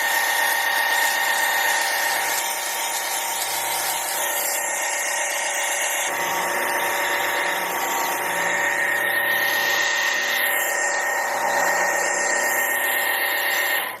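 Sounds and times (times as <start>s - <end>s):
pressure washer motor whine: 0.0s - 14.0s.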